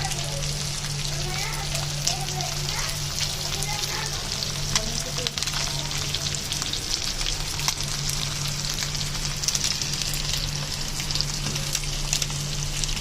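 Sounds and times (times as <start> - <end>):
fish sizzling in hot oil: 0.0 - 13.0.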